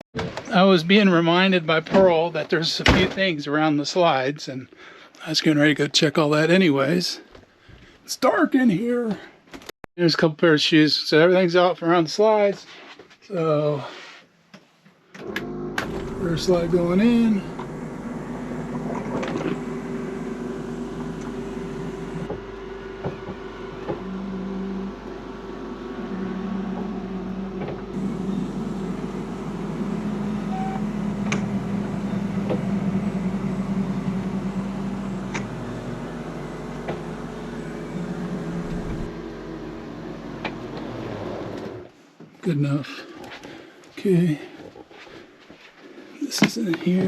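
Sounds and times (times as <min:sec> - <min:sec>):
slide-out motor humming: 0:15.2 - 0:41.9.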